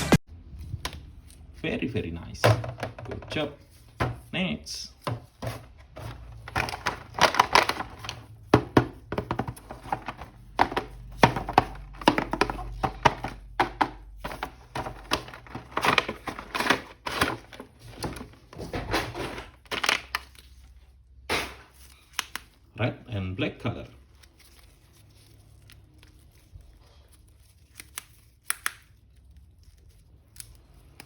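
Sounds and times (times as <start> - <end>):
toy packaging clicks and rustles: 5.0 - 21.1.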